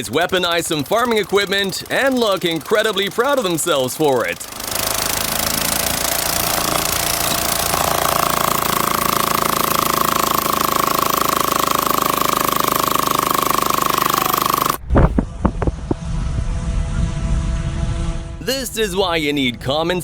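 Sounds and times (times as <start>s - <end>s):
machinery rattling: 0.0s - 15.7s
high steady whine: 4.4s - 19.5s.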